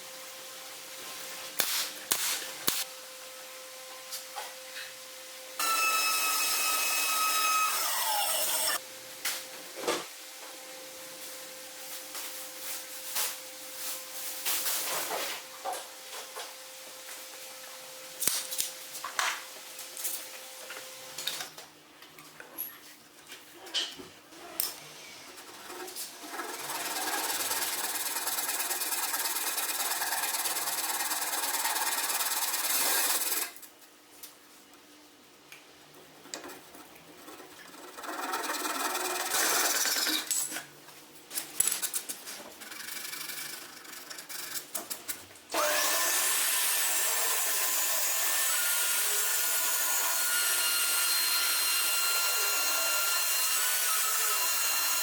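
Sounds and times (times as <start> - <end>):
power tool running: 5.6 - 8.8, 24.9 - 33.6, 45.5 - 55.0.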